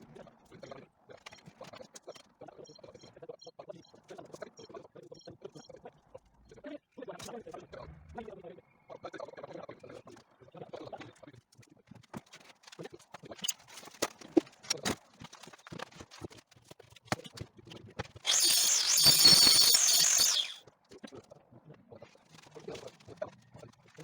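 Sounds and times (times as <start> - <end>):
power tool high whine: 18.3 - 20.6.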